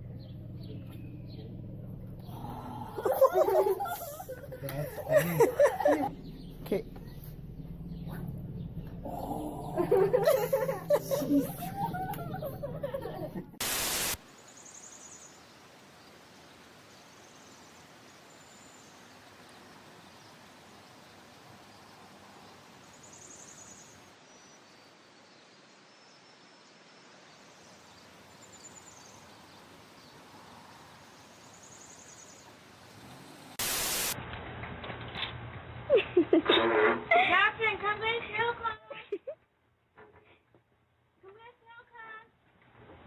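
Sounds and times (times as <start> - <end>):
faint steady hiss: 12.1 - 34.2
loud static bursts: 13.6 - 14.2, 33.6 - 34.2.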